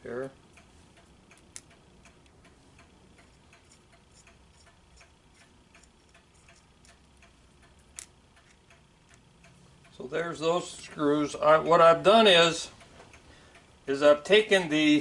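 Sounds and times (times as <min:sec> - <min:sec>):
faint regular ticking: 0:00.0 - 0:15.0
sharp clicks: 0:00.5 - 0:10.0.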